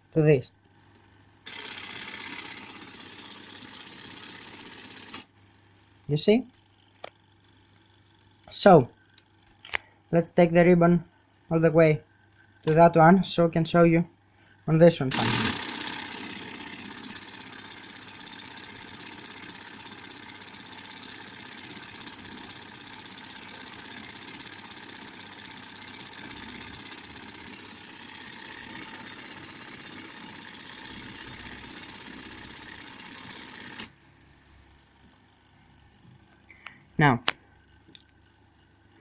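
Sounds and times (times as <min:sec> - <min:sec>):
typewriter ribbon mechanism running: 0:01.5 - 0:05.3, 0:15.1 - 0:33.9.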